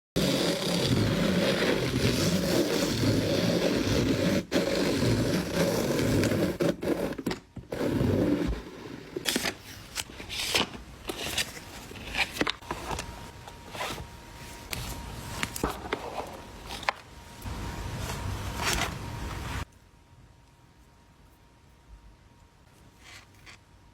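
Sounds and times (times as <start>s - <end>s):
packaging crinkling and scraping: 4.5s - 17.1s.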